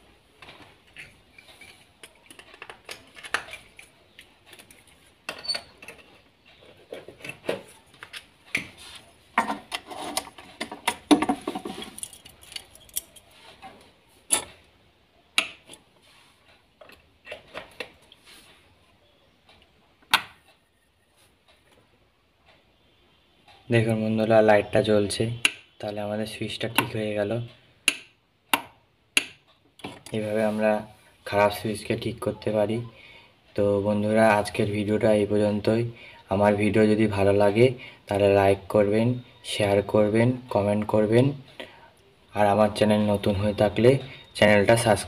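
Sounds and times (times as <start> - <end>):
small plastic parts rattling: 0.4 - 8.3, 9.6 - 13.4
sharp clicks of switch parts: 27.8 - 29.4.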